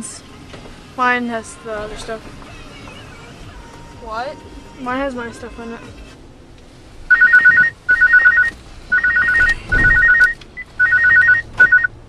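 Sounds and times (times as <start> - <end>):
phone ringtone warble: 7.1 - 11.9.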